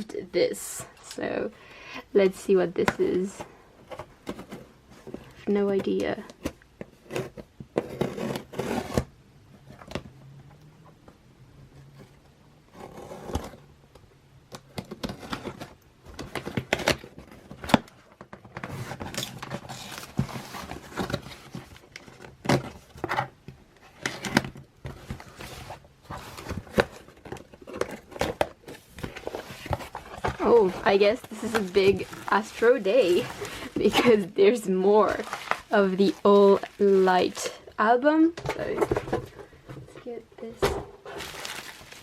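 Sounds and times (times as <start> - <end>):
packaging tearing and rustling: 14.8 - 23.1, 35.0 - 37.5, 41.1 - 42.0.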